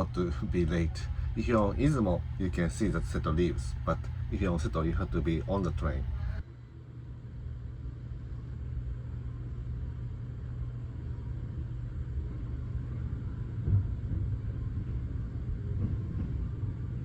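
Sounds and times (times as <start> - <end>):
sleeper train rumbling: 0.0 - 6.4, 11.6 - 17.0.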